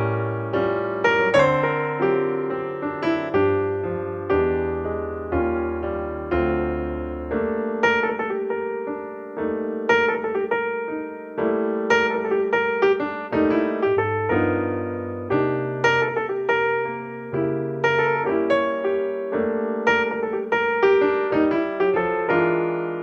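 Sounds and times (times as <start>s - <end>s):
piano chords and notes: 0.0s - 23.0s.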